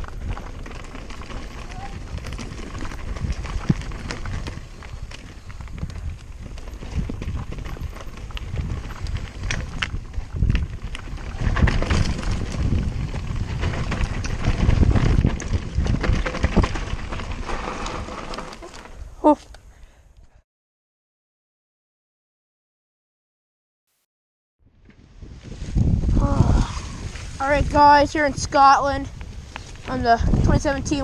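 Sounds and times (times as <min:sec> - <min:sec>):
wind buffeting microphone: 0:00.0 - 0:18.2, 0:24.8 - 0:31.0
mountain bike rattling on trail: 0:00.0 - 0:19.3, 0:24.7 - 0:31.0.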